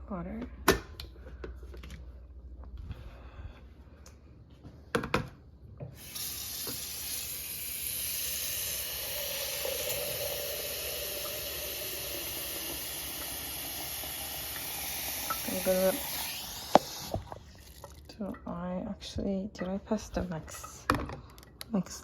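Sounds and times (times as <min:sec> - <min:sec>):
tap running into kettle: 0:06.0 - 0:07.2, 0:08.3 - 0:18.0.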